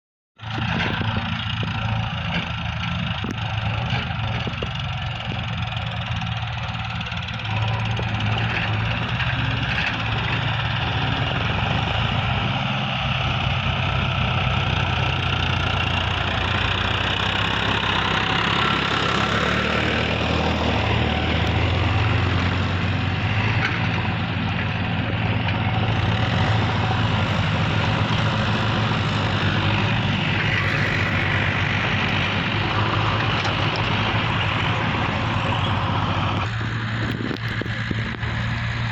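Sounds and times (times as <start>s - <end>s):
diesel engine running: 0.4s - 38.9s.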